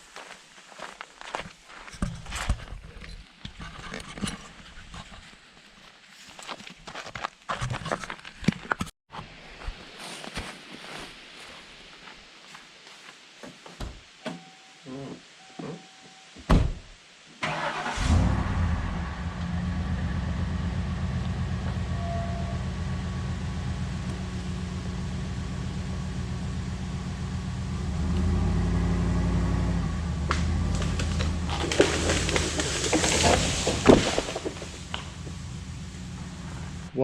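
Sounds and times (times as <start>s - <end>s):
skid steer engine running: 18.5s - 36.9s
skid steer beeping: 21.4s - 24.7s
tree crashing down: 30.2s - 36.2s.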